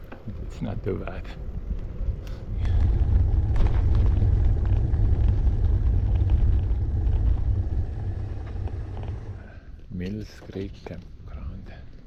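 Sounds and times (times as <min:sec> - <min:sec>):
road and wind noise: 0:00.0 - 0:12.0.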